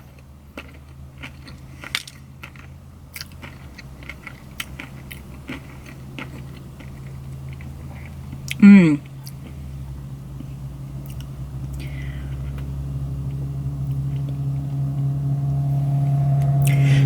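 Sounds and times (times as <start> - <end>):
biting and chewing: 0.0 - 9.7
low hum: 9.4 - 17.0.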